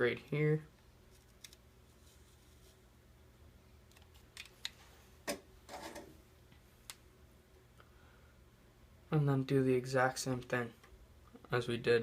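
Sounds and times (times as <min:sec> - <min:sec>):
tape handling sounds: 0:01.1 - 0:02.8.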